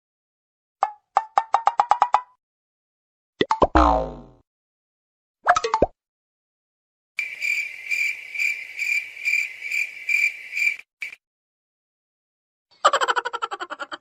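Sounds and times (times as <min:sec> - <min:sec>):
cricket chirping: 0:07.2 - 0:11.2.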